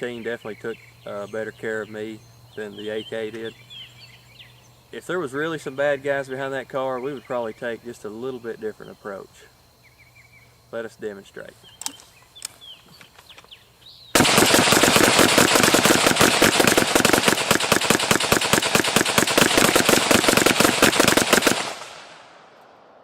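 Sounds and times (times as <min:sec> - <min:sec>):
rifles firing rapidly: 0:14.2 - 0:22.4
gunshot echo: 0:14.2 - 0:23.0.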